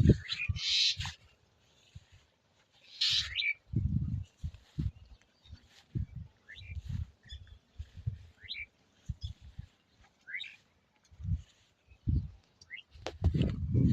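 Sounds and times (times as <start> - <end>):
birds chirping: 0.0 - 13.1
low thumps and rumbles: 13.1 - 13.9.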